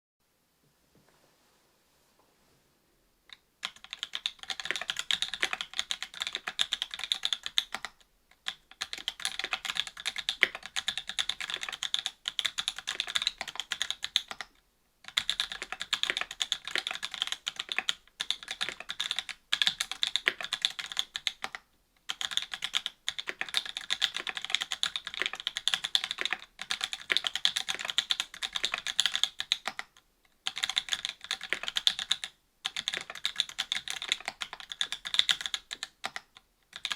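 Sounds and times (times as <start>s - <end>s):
fast typing on mechanical keyboard: 3.6s - 36.9s.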